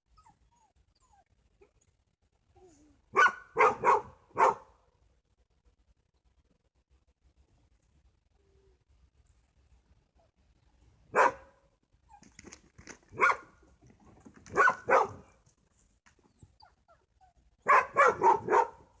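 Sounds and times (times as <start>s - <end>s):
dog barking: 3.1s - 4.8s, 11.1s - 11.6s, 13.1s - 13.6s, 14.5s - 15.4s, 17.6s - 19.0s.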